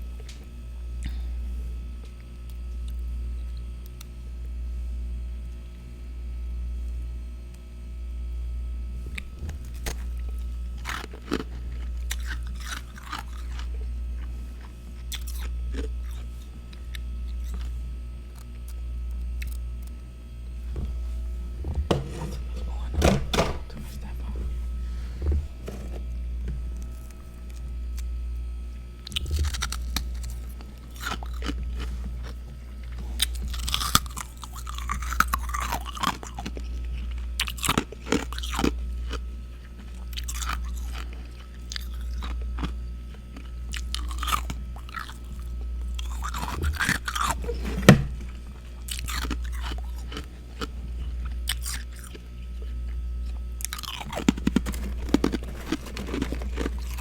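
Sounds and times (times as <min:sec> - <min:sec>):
biting and chewing crunchy frost: 0:00.0 - 0:07.5, 0:08.9 - 0:57.0
steady low hum: 0:00.0 - 0:57.0.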